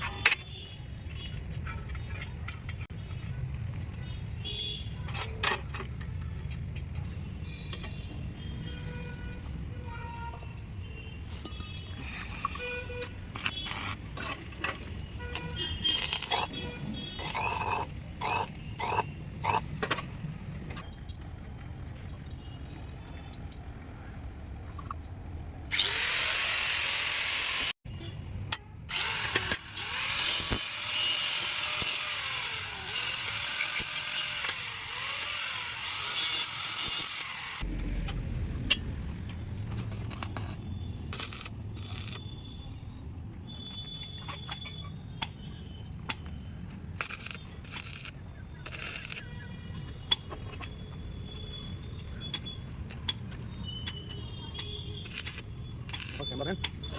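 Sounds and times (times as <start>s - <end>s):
electric power tool on metal: 25.7s - 27.8s, 28.9s - 37.6s.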